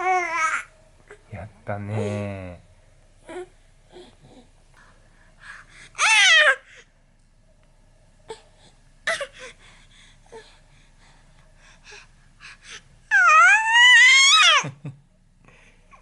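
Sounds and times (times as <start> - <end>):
baby crying: 0.0 - 0.7, 6.0 - 6.7, 13.1 - 14.7.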